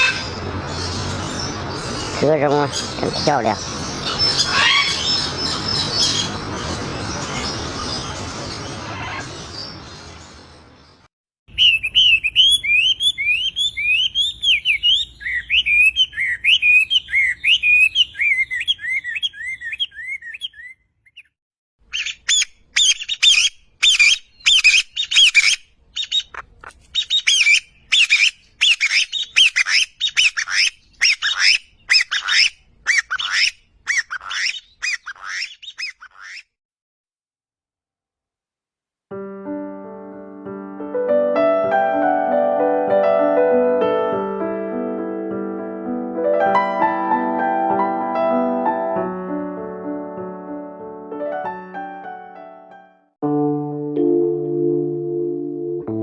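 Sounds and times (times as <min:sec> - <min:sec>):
songbird warbling: 0:00.0 - 0:10.1, 0:11.5 - 0:21.3, 0:21.9 - 0:36.4.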